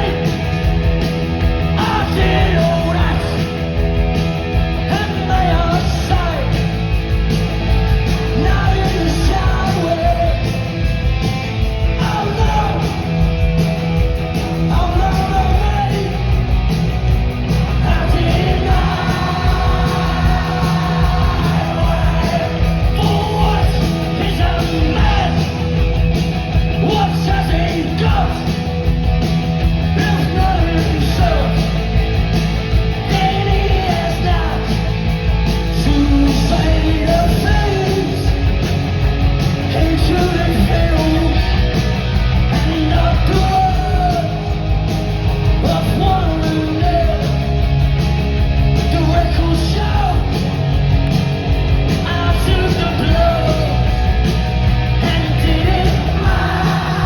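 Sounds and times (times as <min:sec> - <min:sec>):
bass guitar: 0:00.0 - 0:57.0
drums: 0:00.0 - 0:57.0
loud electric guitars: 0:00.0 - 0:57.0
sung and shouted vocals: 0:01.7 - 0:03.6, 0:08.2 - 0:10.4, 0:17.6 - 0:25.7, 0:26.8 - 0:28.5, 0:30.0 - 0:31.7, 0:33.0 - 0:34.9, 0:35.8 - 0:38.5, 0:39.7 - 0:41.7, 0:52.0 - 0:54.2, 0:54.8 - 0:57.0.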